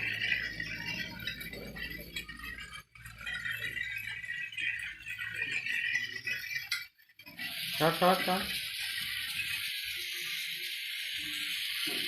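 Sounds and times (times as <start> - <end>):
toy train clattering rattle: 0.0 - 12.0.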